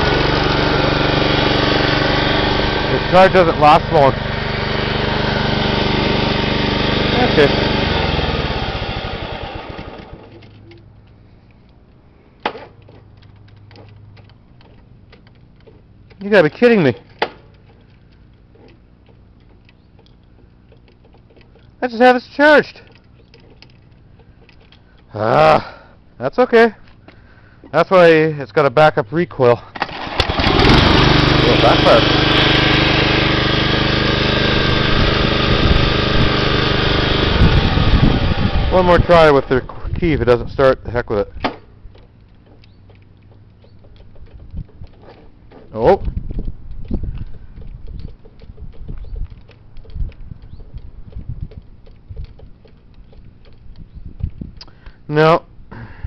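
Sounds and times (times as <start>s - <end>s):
mower engine dying out: 0.0s - 10.6s, 29.7s - 40.2s.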